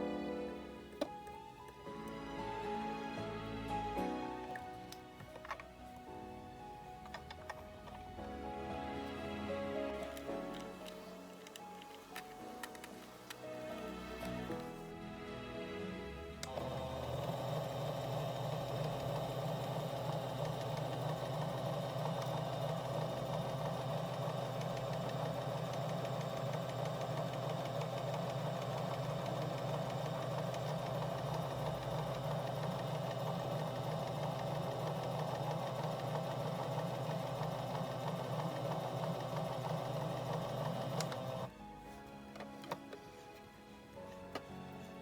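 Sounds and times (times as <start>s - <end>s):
sewing machine running: 16.4s - 41.5s.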